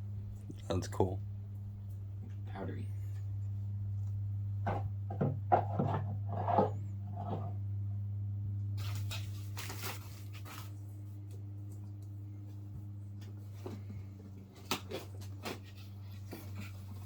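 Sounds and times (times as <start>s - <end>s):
low electrical hum: 0.0s - 17.0s
paper or plastic rustling: 8.8s - 10.8s.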